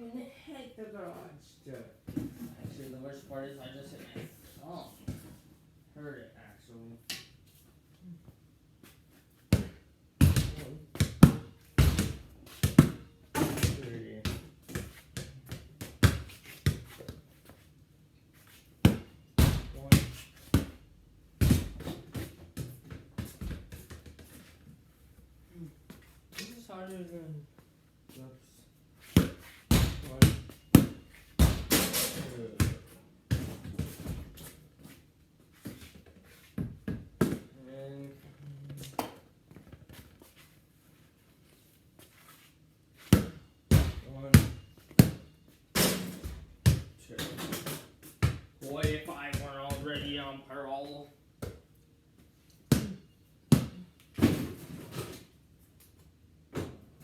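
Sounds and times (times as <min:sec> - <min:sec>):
basketball bouncing: 0:09.5 - 0:16.9, 0:18.8 - 0:20.8, 0:21.4 - 0:24.2, 0:29.2 - 0:34.3, 0:43.1 - 0:45.2, 0:45.8 - 0:46.9, 0:47.6 - 0:50.2, 0:52.7 - 0:54.5
ball thumping metal garage door: 0:09.6 - 0:14.8, 0:18.9 - 0:20.8, 0:21.4 - 0:23.9, 0:29.2 - 0:34.4, 0:43.2 - 0:50.1, 0:52.7 - 0:55.3.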